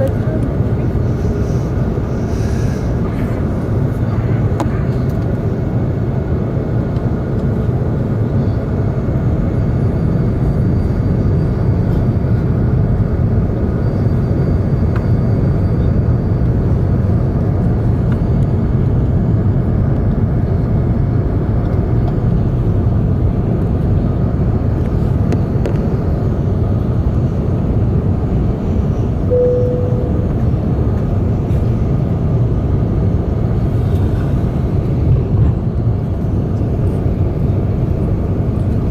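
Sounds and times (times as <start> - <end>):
airflow over fuselage: 0.0 - 9.1
airliner cabin engine rumble: 0.0 - 38.9
short single tone: 29.3 - 30.8.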